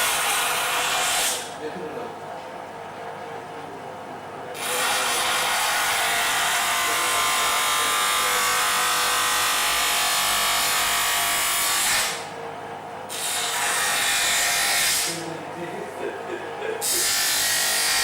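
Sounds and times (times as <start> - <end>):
bench grinder grinding: 4.6 - 12.2, 13.1 - 15.2, 16.8 - 18.0.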